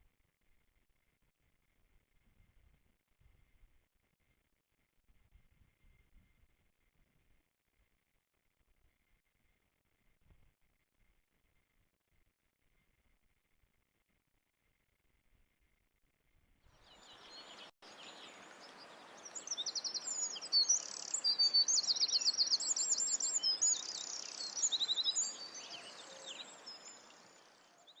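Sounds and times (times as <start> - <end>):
bird trills and chirps: 16.9 - 28.0.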